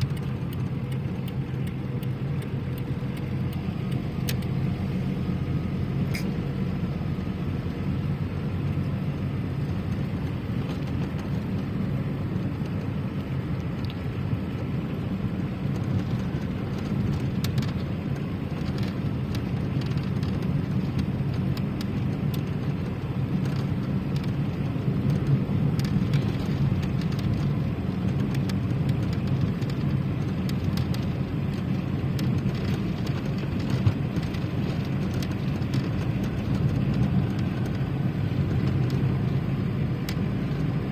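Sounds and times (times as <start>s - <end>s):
low rumble with faint hiss: 0.0s - 40.9s.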